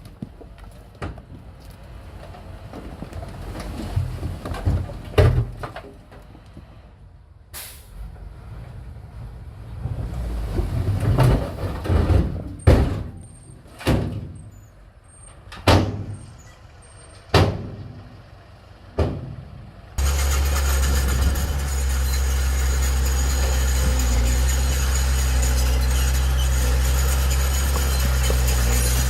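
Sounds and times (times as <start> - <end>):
machinery clanks and bangs: 10.6 - 14.6, 15.5 - 16.3, 17.2 - 18.2, 18.9 - 29.0
low engine rumble: 14.3 - 29.0.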